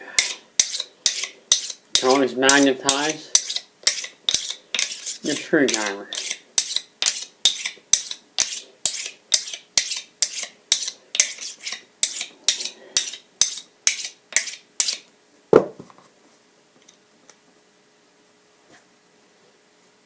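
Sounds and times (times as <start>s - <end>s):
magnet scraping steel shaft: 0.2s - 15.1s.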